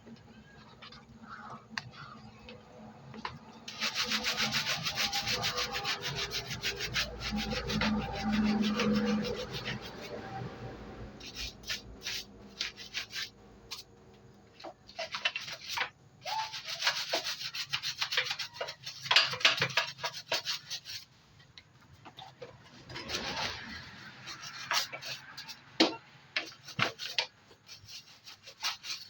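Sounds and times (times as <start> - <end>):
scrubbing on a hard surface: 3.7 - 10.6, 11.2 - 13.9, 14.6 - 21.2, 22.0 - 25.7, 26.4 - 29.0.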